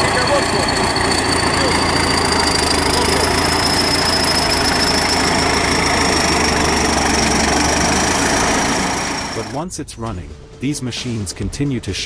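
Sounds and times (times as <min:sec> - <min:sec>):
bulldozer engine running: 0:00.0 - 0:09.6
high whine rising in pitch: 0:00.0 - 0:09.6.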